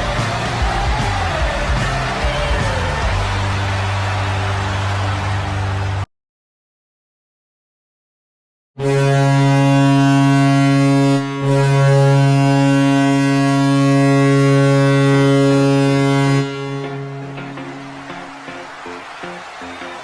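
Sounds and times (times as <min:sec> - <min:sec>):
deep goal horn blast: 0:08.8 - 0:20.0.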